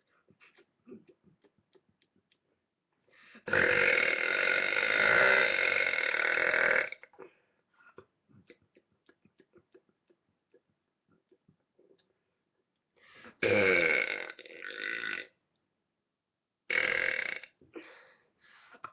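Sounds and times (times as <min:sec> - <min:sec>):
mouth clicks: 0:00.3 - 0:02.6
boy belching: 0:03.4 - 0:07.2, 0:13.4 - 0:15.3, 0:16.7 - 0:17.6.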